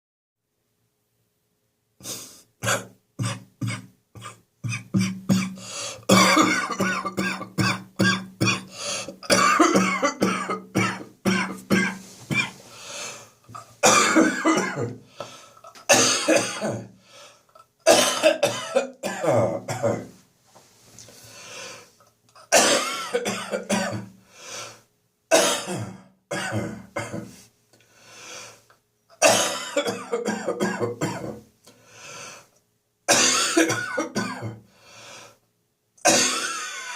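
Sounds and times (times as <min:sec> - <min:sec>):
person coughing: 0:02.0 - 0:12.6, 0:13.5 - 0:15.0, 0:15.6 - 0:16.9, 0:17.6 - 0:20.2, 0:22.4 - 0:24.2, 0:25.3 - 0:27.4, 0:29.2 - 0:31.5, 0:33.1 - 0:34.7, 0:36.0 - 0:36.9.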